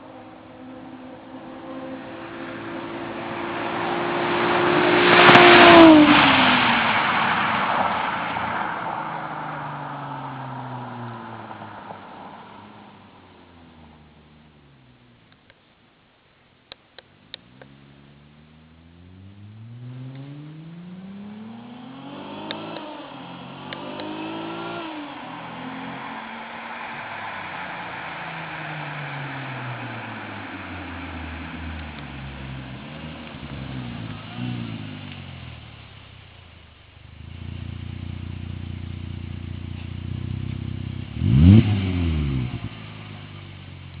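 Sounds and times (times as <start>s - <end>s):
car exhaust accelerating hard: 17.0s - 44.0s.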